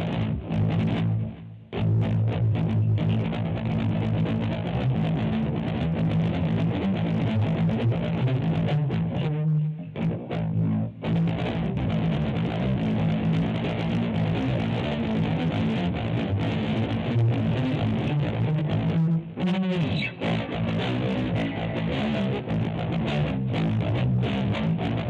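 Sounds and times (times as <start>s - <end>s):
electric guitar picked notes: 0.0s - 25.0s.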